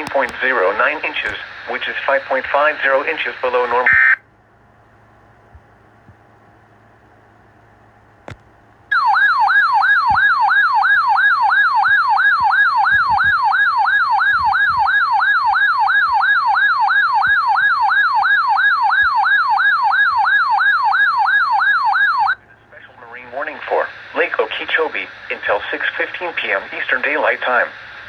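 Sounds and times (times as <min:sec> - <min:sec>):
faint radio hiss: 0:00.0 - 0:04.2, 0:22.4 - 0:28.0
electronic warbling siren: 0:08.9 - 0:22.4.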